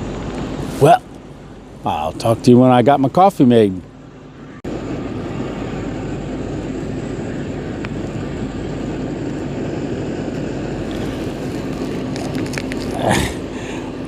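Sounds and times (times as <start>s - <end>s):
gas stove burner running: 4.7s - 14.0s.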